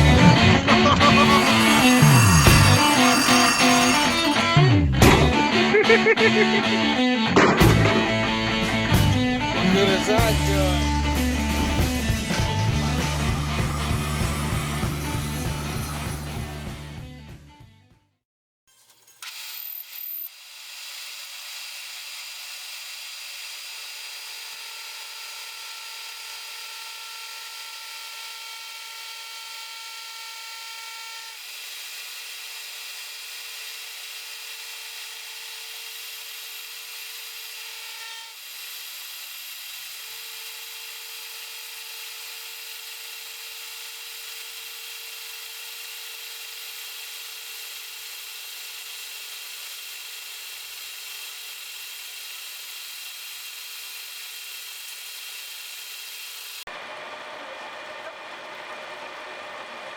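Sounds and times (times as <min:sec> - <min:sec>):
metal lathe whining: 0:00.6 - 0:04.6, 0:09.5 - 0:16.9.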